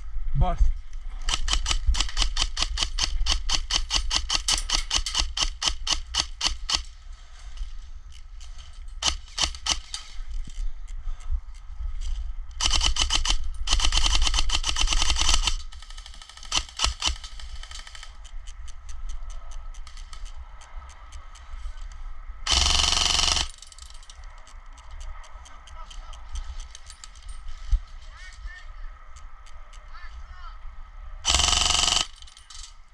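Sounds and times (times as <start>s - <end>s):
airsoft guns firing: 12.6s - 18.2s, 22.5s - 23.9s, 31.3s - 32.4s.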